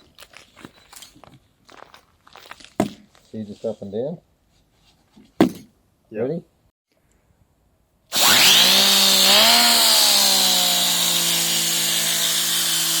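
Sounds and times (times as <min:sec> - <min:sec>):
spinning nozzle whine: 0:08.1 - 0:13.0.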